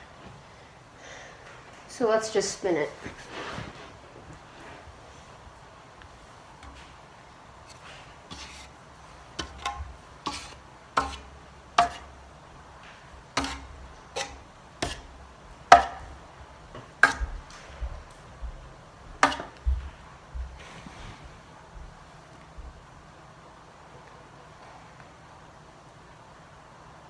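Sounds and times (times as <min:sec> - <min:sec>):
faint low fan hum: 0:00.0 - 0:27.0
ceiling fan clicks and knocks: 0:05.6 - 0:08.6, 0:09.3 - 0:23.0.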